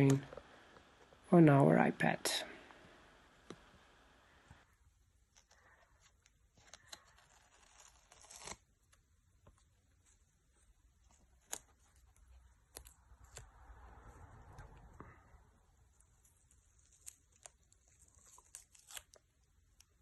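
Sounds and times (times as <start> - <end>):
rustling tearing sound: 5.3 - 9.0, 10.9 - 13.9, 15.9 - 20.0.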